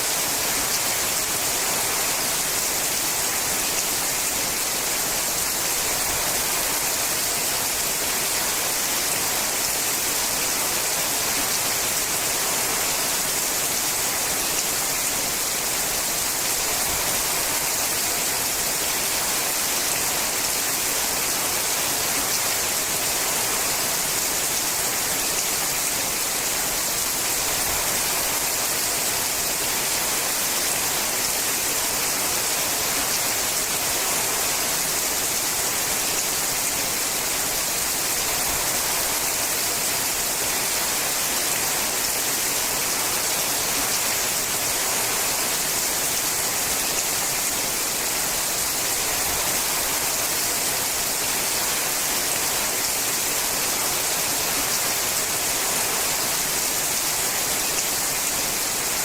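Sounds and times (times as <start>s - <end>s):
rain on a metal roof: 0.0s - 59.0s.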